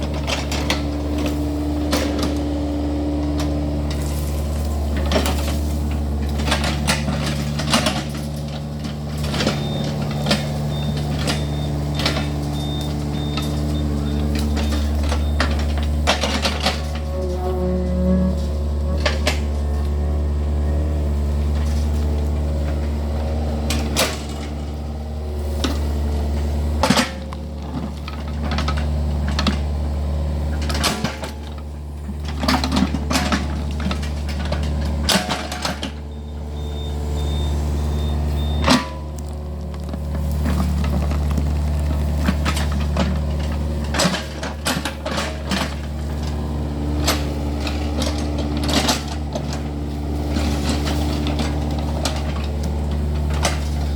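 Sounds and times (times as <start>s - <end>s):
excavator diesel engine: 0.0s - 53.9s
metal clanks and knocks: 3.2s - 20.5s, 30.5s - 37.4s, 38.4s - 53.9s.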